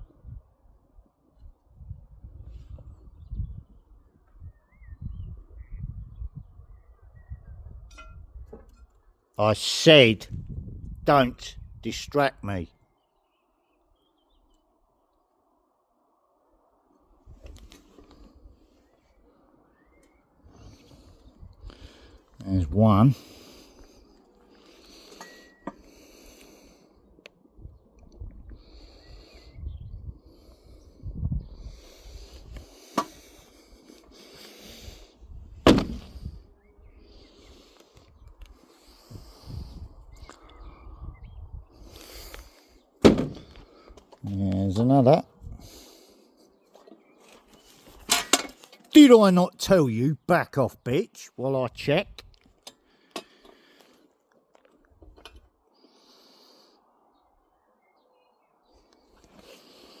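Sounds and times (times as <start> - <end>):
faint bird chirps: 3.1 - 9.3, 18.6 - 21.1
sharp knocks: 35.7 - 36.2, 43.0 - 43.6.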